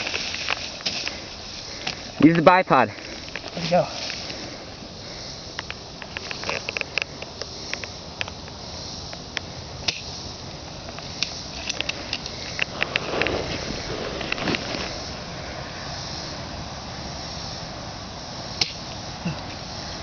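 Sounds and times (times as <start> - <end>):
footsteps crackling through dry leaves: 0.0 - 15.9
steady hiss: 0.0 - 20.0.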